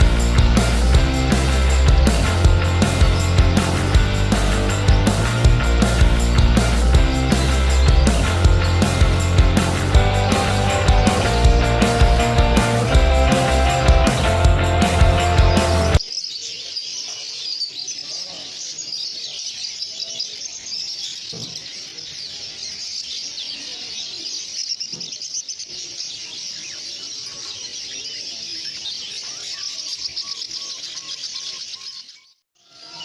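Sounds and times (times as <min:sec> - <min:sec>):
music: 0:00.0 - 0:16.0
songbirds chirping and twittering: 0:00.0 - 0:33.0.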